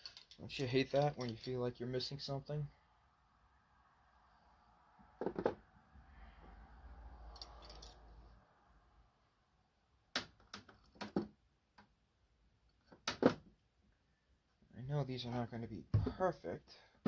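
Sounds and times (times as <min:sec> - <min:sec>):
metal wrenches clinking: 0:00.0 - 0:01.5.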